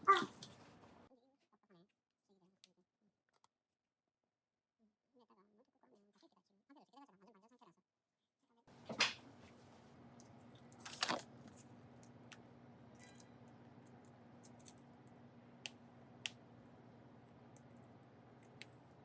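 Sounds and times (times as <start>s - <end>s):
low hum: 8.7s - 19.0s.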